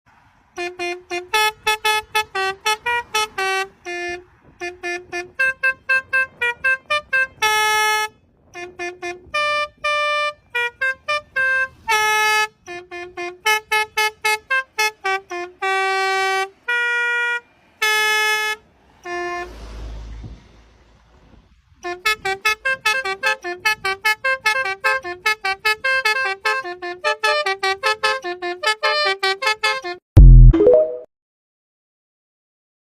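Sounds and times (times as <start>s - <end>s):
multi-tone bus horn tune: 0.1s - 30.0s
low rumble: 19.5s - 21.8s.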